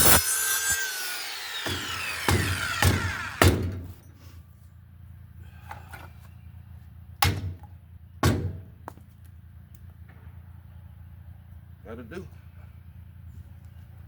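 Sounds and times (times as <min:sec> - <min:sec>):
loud sharp knocks: 0:01.7 - 0:03.9.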